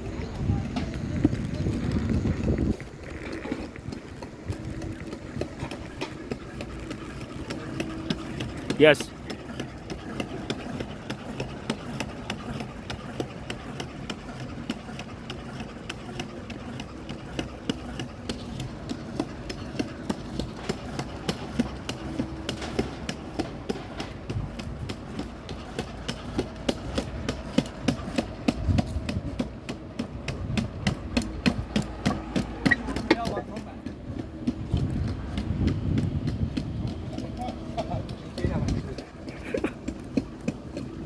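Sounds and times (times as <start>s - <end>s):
motor hum: 0.2s - 41.0s.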